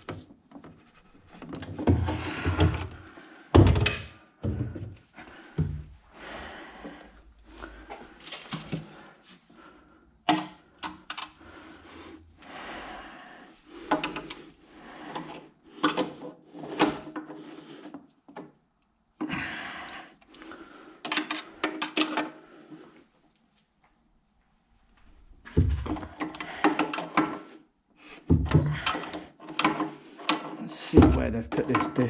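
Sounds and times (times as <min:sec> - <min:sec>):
hard objects knocking and rattling: 0:00.0 - 0:05.0, 0:25.5 - 0:27.5, 0:28.2 - 0:32.0.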